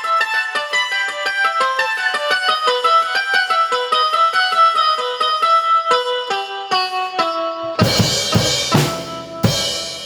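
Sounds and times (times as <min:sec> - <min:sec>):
plucked instrument notes: 0:00.0 - 0:10.0
drum kit: 0:07.8 - 0:10.0.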